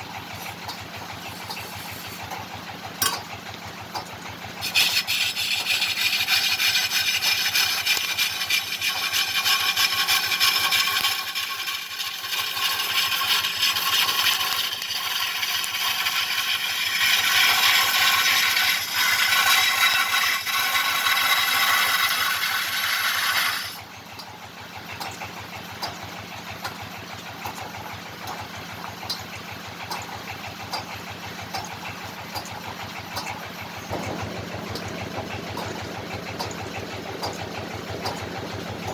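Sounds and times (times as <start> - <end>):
chisel scraping spinning wood: 0.0 - 3.0, 3.8 - 23.9
lathe humming: 4.4 - 23.9.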